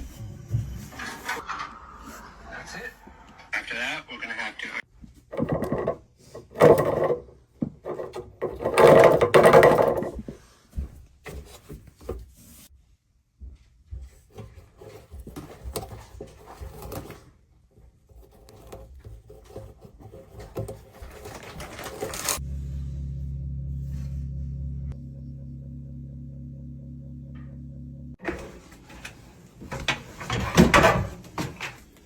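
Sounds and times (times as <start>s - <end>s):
scraping and knocking on dryer: 5.2s - 12.7s, 13.4s - 22.4s, 28.2s - 32.0s
low hum: 21.5s - 29.9s.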